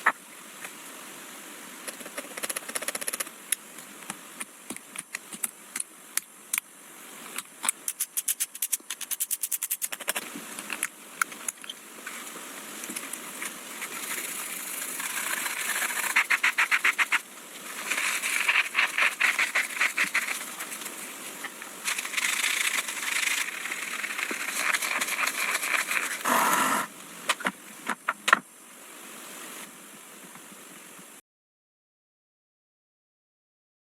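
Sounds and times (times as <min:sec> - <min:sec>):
small metal parts clicking: 0:07.6 - 0:11.7.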